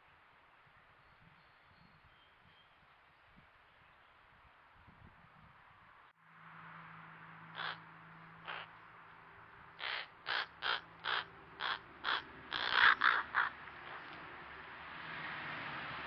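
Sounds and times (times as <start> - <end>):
crows calling: 7.5 - 8.8, 9.7 - 14.2.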